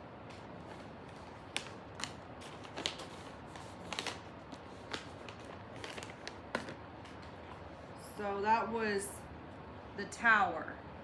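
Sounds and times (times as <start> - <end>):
cards snapping and rustling: 0.3 - 7.4.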